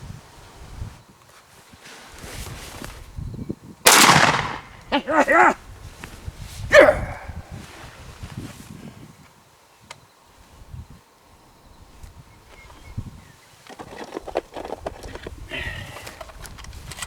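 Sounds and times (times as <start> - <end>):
shotgun shot with echo: 3.9 - 4.9.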